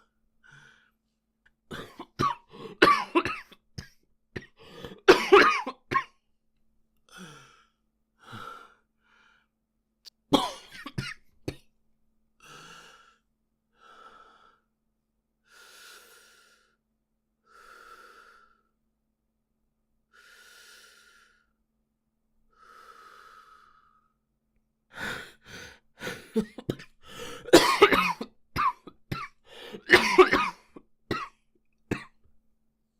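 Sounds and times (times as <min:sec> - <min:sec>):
boy coughing: 0:01.7 - 0:03.6, 0:04.4 - 0:06.1, 0:10.4 - 0:11.3, 0:26.1 - 0:31.3
long breaths: 0:07.1 - 0:09.6, 0:12.4 - 0:14.7, 0:15.4 - 0:16.8, 0:17.4 - 0:18.8, 0:20.1 - 0:21.6, 0:22.5 - 0:24.3, 0:24.9 - 0:26.3, 0:27.0 - 0:27.5, 0:29.4 - 0:29.8.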